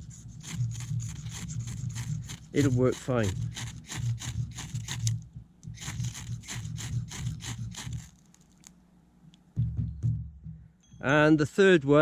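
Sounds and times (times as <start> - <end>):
knife scraping ferro rod: 0.0 - 5.2, 5.8 - 8.7.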